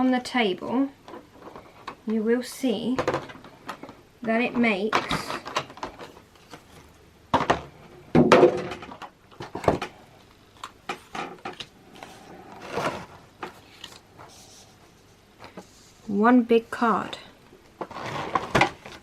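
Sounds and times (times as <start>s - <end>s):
trading cards handled on a table: 10.2s - 16.0s.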